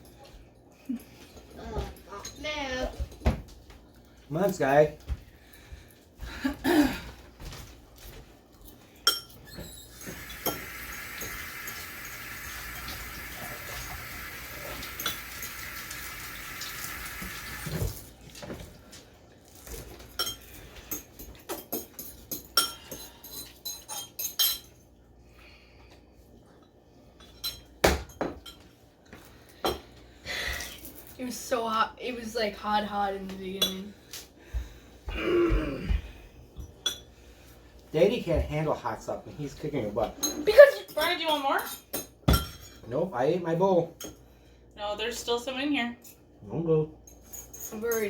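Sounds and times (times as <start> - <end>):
utensils clinking on bowls: 8.9 - 12.0, 19.9 - 24.8, 47.0 - 48.0.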